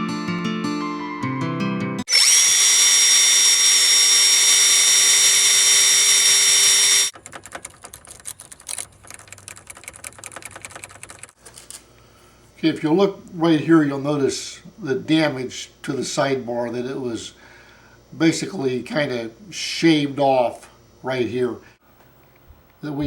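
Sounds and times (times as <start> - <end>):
guitar music: 0.0 - 2.0
power drill running: 2.1 - 7.2.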